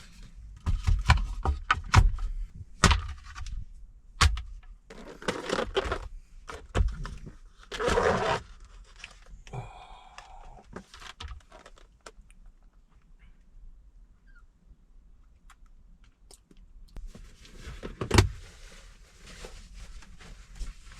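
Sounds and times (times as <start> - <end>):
plastic rustling and scraping: 4.9 - 9.4, 10.7 - 12.2, 17.0 - 20.9.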